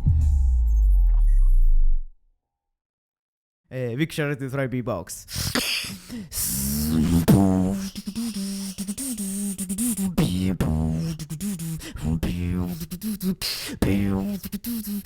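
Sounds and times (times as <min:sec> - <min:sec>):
beatboxing mouth clicks: 0:05.3 - 0:15.0
hummed vocal tone: 0:05.4 - 0:15.0.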